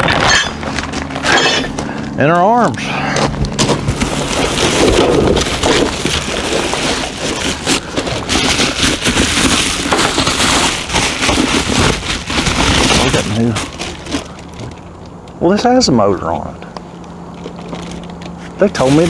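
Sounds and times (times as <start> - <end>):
packaging rustling and crackling: 3.2 - 15.1, 17.3 - 19.0.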